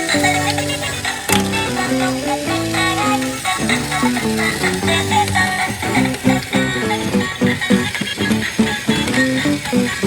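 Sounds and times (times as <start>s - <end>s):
upbeat plucked guitar-like tune: 0.0s - 10.0s.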